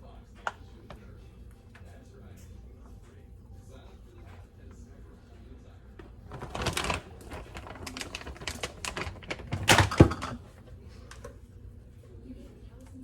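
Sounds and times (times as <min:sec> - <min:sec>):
utensils and dishes clicking: 0:07.6 - 0:10.4.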